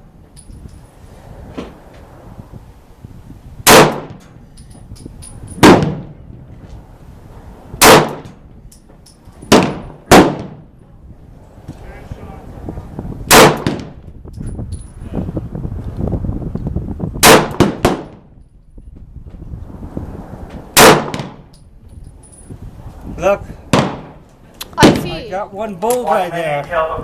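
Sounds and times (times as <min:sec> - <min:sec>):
pistol shots: 0:03.6 - 0:04.2, 0:05.6 - 0:06.1, 0:07.8 - 0:08.4, 0:09.5 - 0:10.6, 0:13.3 - 0:14.0, 0:17.2 - 0:18.2, 0:20.8 - 0:21.4, 0:23.7 - 0:24.2.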